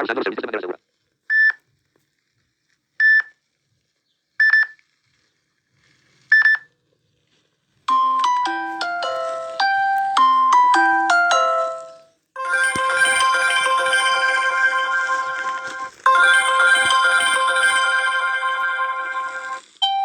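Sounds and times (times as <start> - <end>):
bright ringtone melody: 7.9 - 20.0
busy ringtone tune: 7.9 - 20.0
high chime pings: 7.9 - 20.0.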